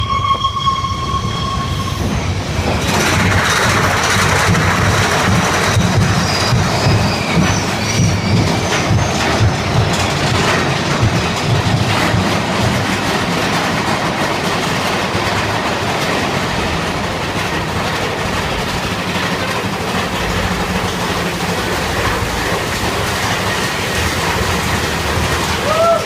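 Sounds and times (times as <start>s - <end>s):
wheel squeals: 0.0s - 2.8s, 5.8s - 10.3s
roller coaster cars rattling on track: 0.0s - 26.0s.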